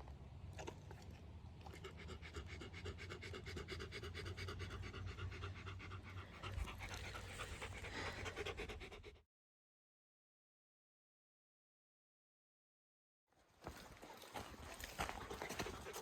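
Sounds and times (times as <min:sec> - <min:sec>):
dog panting: 0:00.6 - 0:09.2, 0:14.8 - 0:16.0.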